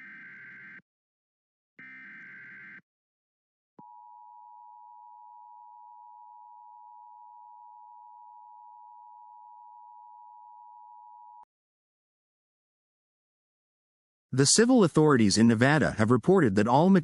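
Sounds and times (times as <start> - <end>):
two-tone electronic alarm: 0.0 - 0.8.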